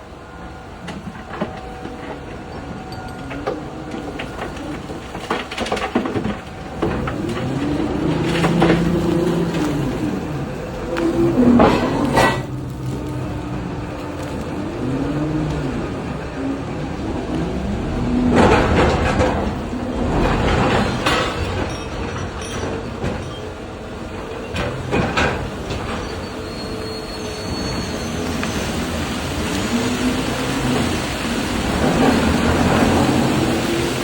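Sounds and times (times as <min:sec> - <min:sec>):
excavator motors whining: 0:00.0 - 0:34.0
heavy rumble: 0:03.9 - 0:26.1, 0:27.5 - 0:34.0
ore crashing into steel wagons: 0:05.0 - 0:13.3.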